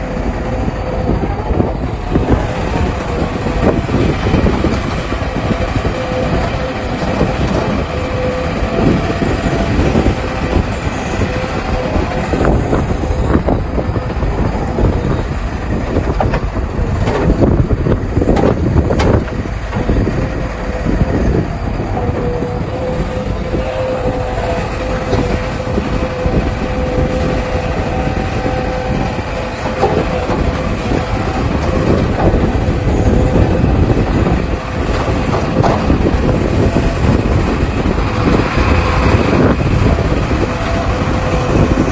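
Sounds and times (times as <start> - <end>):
excavator diesel engine whine: 0.0 - 41.9
bucket and tracks knocking: 29.4 - 36.4.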